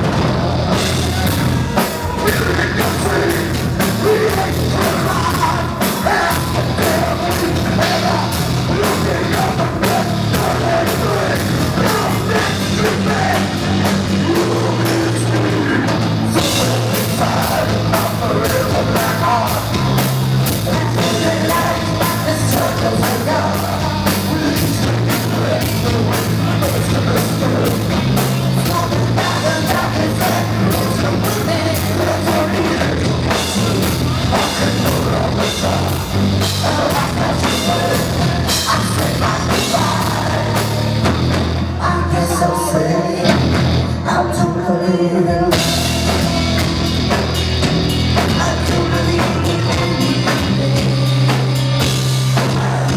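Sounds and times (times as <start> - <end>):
fast drum beat: 0.0 - 41.8, 45.5 - 52.9
live rock band playing: 0.0 - 44.5, 45.3 - 52.9
person singing: 0.0 - 52.9.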